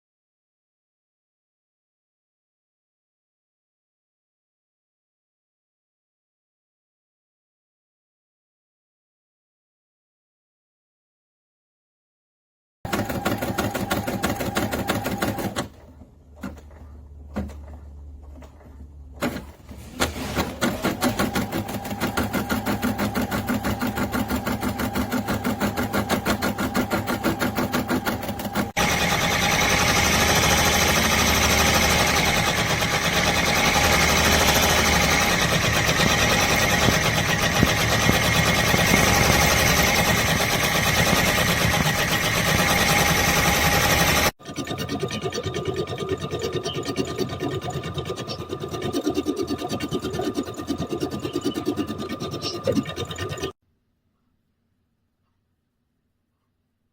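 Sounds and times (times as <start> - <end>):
embroidery machine stitching: 12.9 - 16.8, 19.2 - 44.6.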